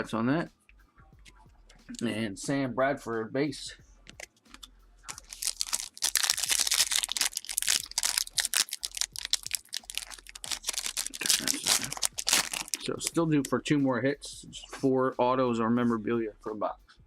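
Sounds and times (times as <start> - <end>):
cards being handled: 4.1 - 13.0
card wrapper crinkling and tearing: 4.2 - 13.1.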